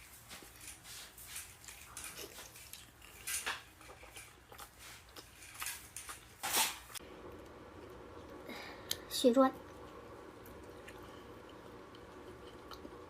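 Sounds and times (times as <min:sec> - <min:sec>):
utensils clicking against dishes: 0:00.4 - 0:04.3.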